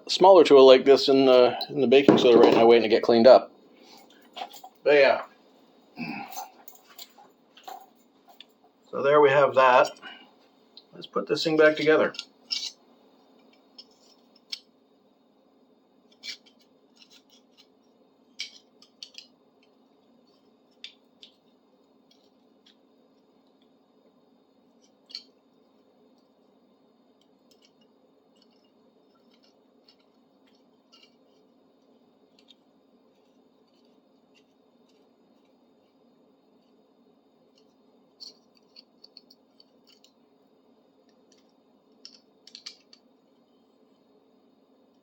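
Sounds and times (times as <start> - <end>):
faint steady hum: 0.0 - 45.0
small metal parts clicking: 12.1 - 12.8, 16.1 - 17.7, 18.3 - 19.7, 24.8 - 25.4, 27.2 - 31.4, 37.5 - 40.2, 41.3 - 43.0.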